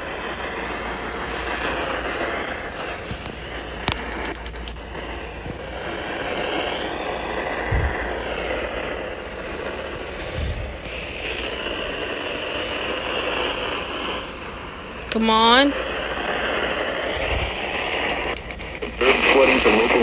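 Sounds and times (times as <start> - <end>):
radio static hiss: 0.0 - 20.0
quick clicks: 3.1 - 4.9, 17.9 - 19.0.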